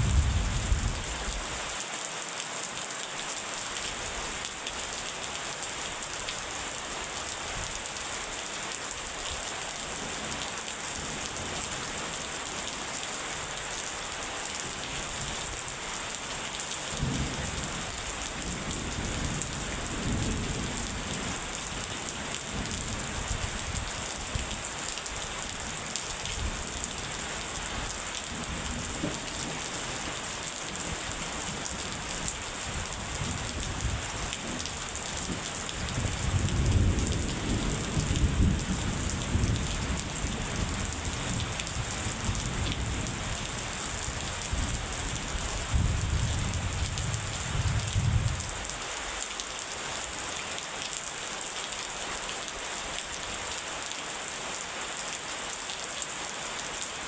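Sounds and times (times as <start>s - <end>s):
thunder rumbling: 0.0s - 1.3s
steady rain: 0.0s - 57.0s.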